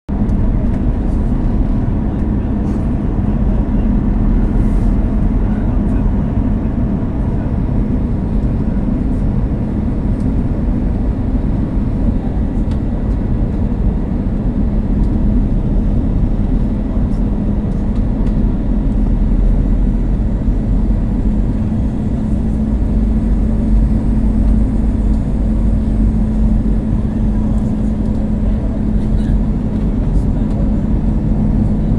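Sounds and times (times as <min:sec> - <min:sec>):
airflow rush and engine drone: 0:00.1 - 0:31.9
constant low hum: 0:00.1 - 0:31.9.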